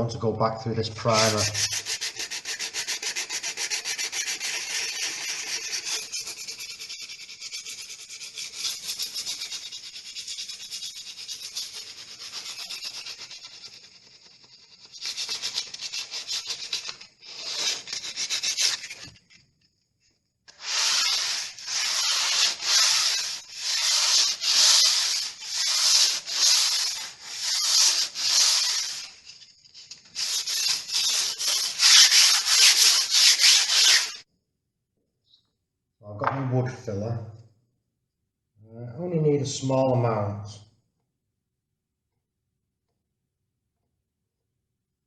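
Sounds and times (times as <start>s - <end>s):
hand sanding scratchy rasp: 0.9s - 19.1s, 20.5s - 34.2s.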